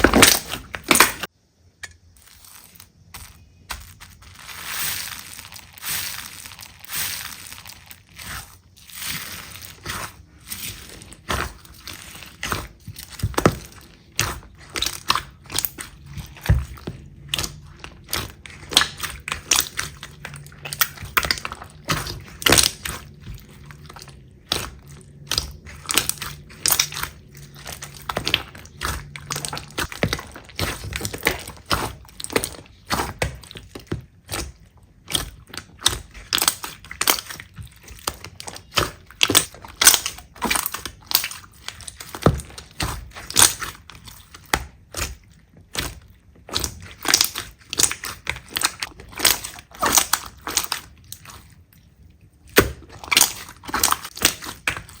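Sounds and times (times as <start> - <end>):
slime crackling and popping: 0.0 - 1.3, 2.2 - 51.7, 52.4 - 55.0.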